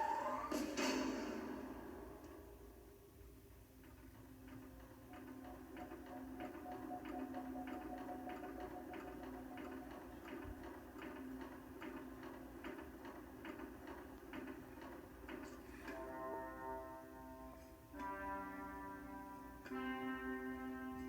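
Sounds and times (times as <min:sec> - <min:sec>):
steady ticking: 0:03.6 - 0:16.1.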